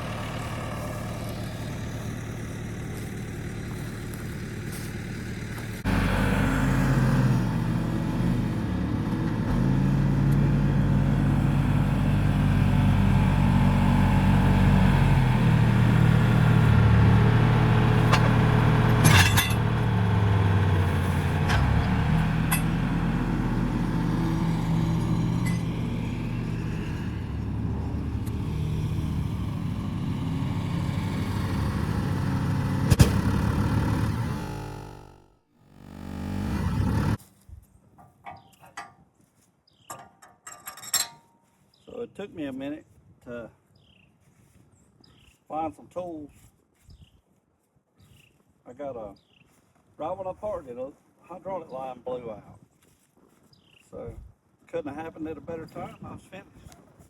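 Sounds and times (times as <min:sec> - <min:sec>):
vehicle engine running: 0:00.0 - 0:37.2.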